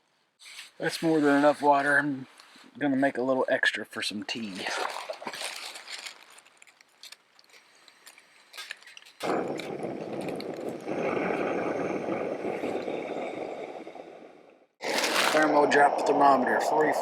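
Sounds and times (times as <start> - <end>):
camping stove burning with hiss: 7.5 - 17.0.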